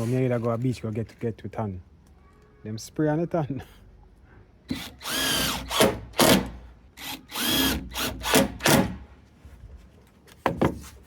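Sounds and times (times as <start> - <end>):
power drill motor whining: 4.7 - 6.4, 7.0 - 8.4.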